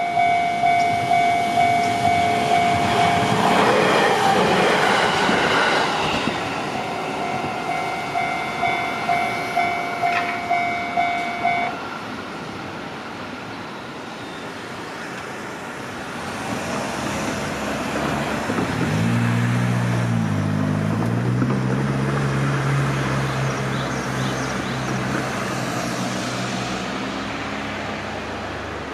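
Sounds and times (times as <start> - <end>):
vehicle engine humming: 0.0 - 11.8
railway crossing warning bell: 0.0 - 12.1
passing train: 0.0 - 28.9.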